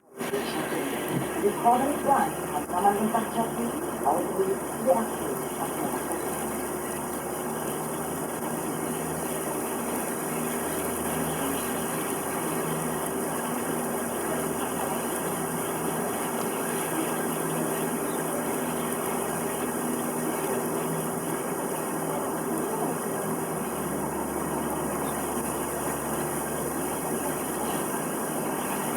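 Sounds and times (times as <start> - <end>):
boat engine droning: 0.0 - 28.9.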